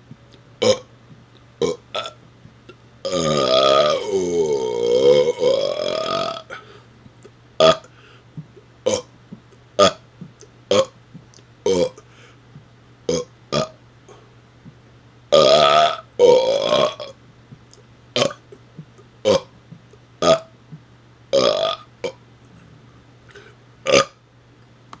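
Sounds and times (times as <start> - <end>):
man burping: 0.6 - 0.9, 1.6 - 2.2, 3.0 - 6.7, 7.6 - 7.9, 8.5 - 9.1, 9.8 - 10.0, 10.7 - 11.0, 11.7 - 12.0, 13.1 - 13.8, 15.3 - 17.1, 18.2 - 19.5, 20.2 - 20.5, 21.3 - 22.2, 23.9 - 24.2.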